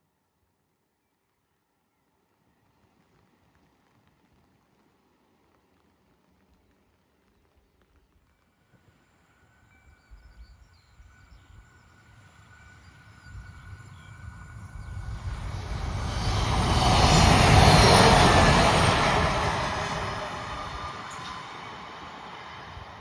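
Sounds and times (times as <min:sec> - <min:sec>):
diesel train passing: 0:11.5 - 0:23.0.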